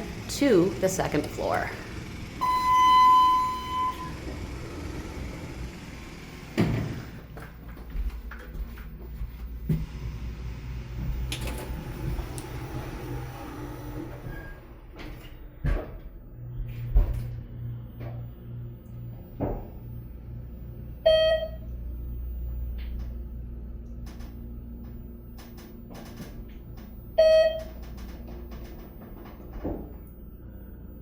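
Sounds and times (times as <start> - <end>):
elevator doors sliding: 0.0 - 7.3, 9.8 - 18.3
elevator car rumbling: 0.0 - 31.0
steady low hum: 0.0 - 31.0
elevator beep: 0.6 - 5.5, 9.9 - 31.0.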